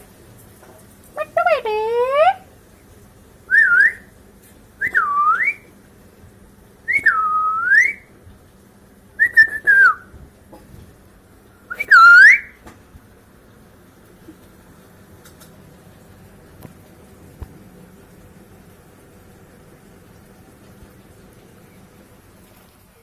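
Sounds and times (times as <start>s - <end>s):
parrot whistling swooping calls: 3.5s - 4.1s, 4.8s - 5.7s, 6.9s - 8.1s, 9.2s - 10.1s, 11.7s - 12.6s.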